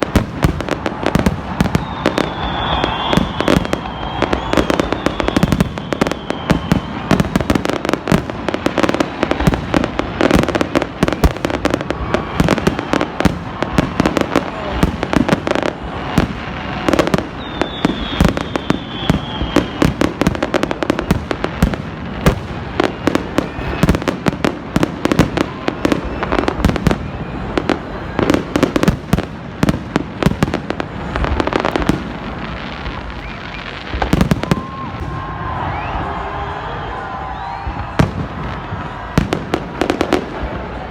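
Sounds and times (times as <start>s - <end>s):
fireworks banging and crackling: 0.0s - 40.9s.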